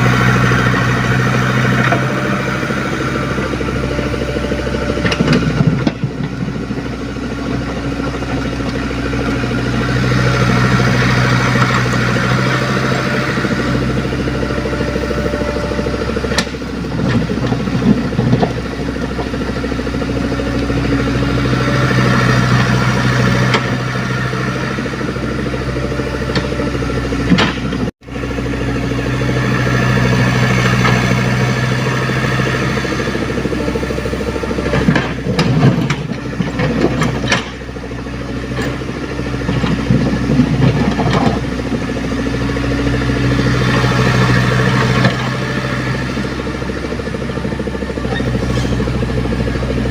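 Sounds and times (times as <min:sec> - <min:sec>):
excavator diesel engine running: 0:00.0 - 0:49.9.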